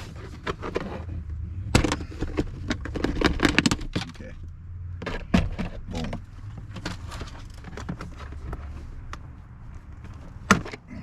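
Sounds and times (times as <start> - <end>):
plastic clicks and rattles: 1.8 - 4.2.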